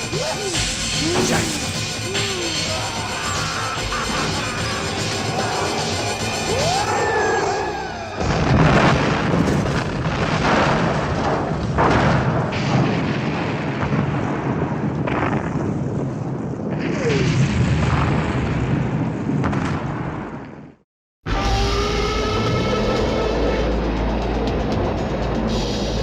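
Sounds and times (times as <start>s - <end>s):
booms and crashes: 8.2s - 20.8s
heavy rumble: 21.3s - 26.0s.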